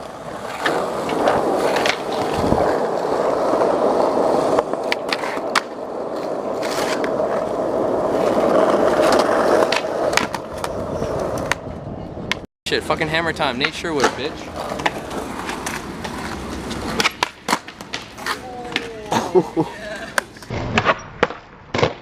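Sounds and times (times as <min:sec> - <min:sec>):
skateboard clacks: 0:00.0 - 0:12.4, 0:13.5 - 0:19.2
skateboard wheels rumbling on pavement: 0:00.0 - 0:20.9.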